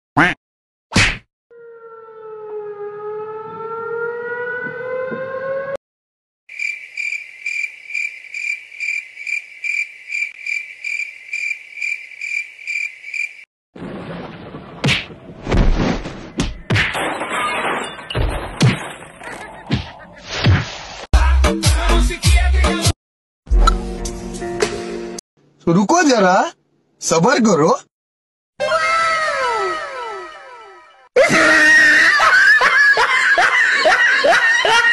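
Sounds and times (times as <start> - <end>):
punch-like hits and thuds: 0.9 - 1.3, 14.8 - 17.2.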